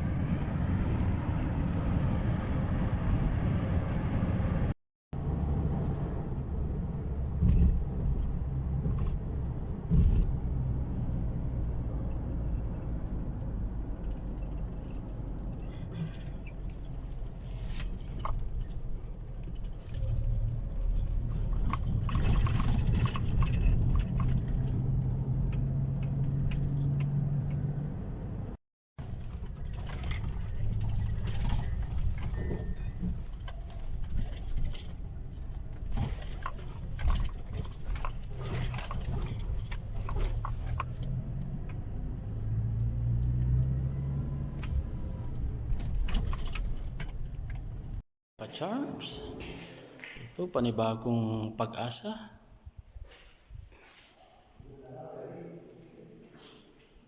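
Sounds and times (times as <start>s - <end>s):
loose metal jingling and rattling: 10.2s - 27.8s, 29.0s - 41.9s, 44.5s - 48.0s.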